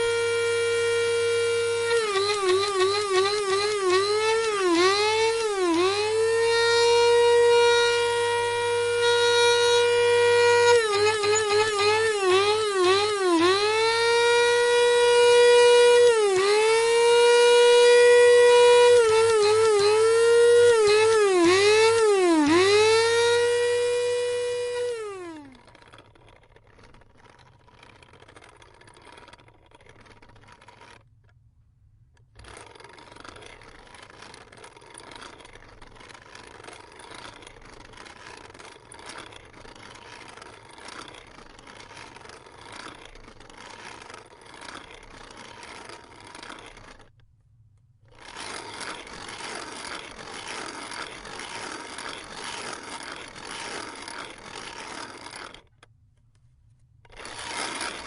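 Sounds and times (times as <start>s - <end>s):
coffee grinder grinding beans: 0.0s - 31.4s, 32.4s - 47.2s, 48.1s - 55.9s, 57.1s - 58.0s.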